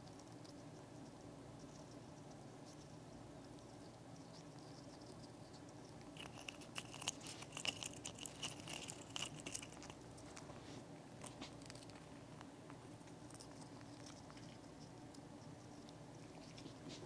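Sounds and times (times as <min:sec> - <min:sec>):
parrot cracking a nut: 0:06.0 - 0:10.5.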